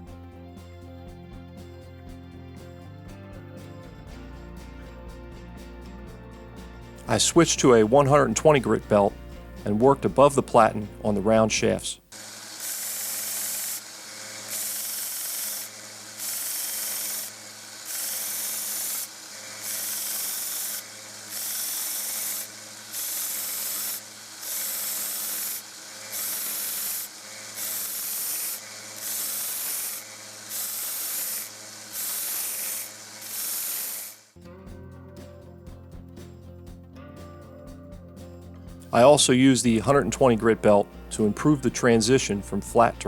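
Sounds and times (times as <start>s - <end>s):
belt sander grinding steel: 12.1s - 34.4s
sander motor hum: 12.1s - 34.4s.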